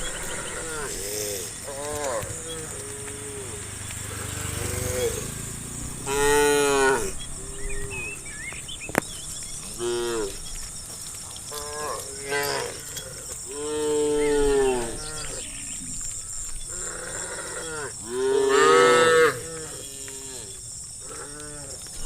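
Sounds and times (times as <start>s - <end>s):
cows mooing: 0.0s - 8.4s, 9.5s - 10.6s, 11.4s - 22.0s.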